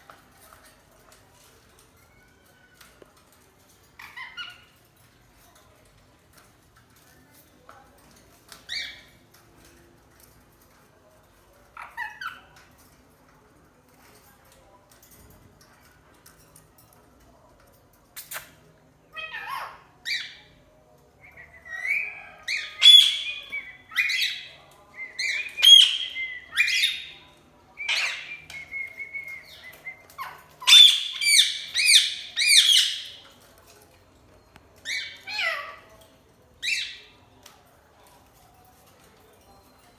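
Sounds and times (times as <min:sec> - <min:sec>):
parrot squawking: 0:19.1 - 0:20.4, 0:21.6 - 0:24.5, 0:25.2 - 0:27.1, 0:30.2 - 0:33.2, 0:34.9 - 0:35.9.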